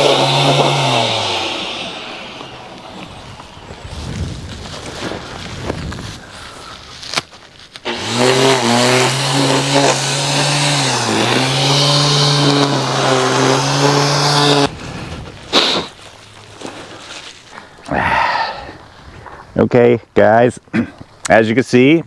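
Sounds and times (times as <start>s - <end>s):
string trimmer running: 0.0s - 4.3s, 7.8s - 16.1s.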